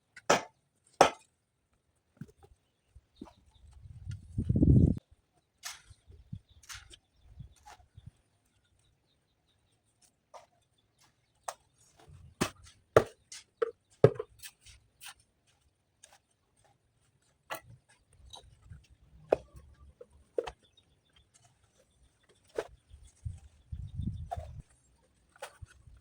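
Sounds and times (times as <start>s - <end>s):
stone and tools knocking: 13.0s - 14.5s.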